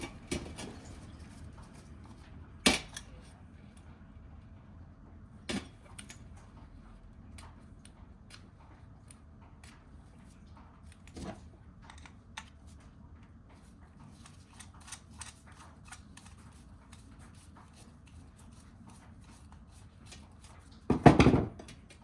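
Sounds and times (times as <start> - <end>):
low steady rumble: 0.0 - 14.6.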